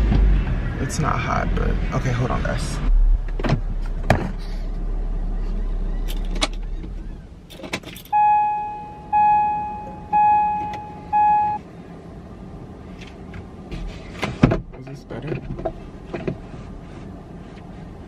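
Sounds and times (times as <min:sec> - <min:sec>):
car warning chime beeps: 0:08.1 - 0:11.6.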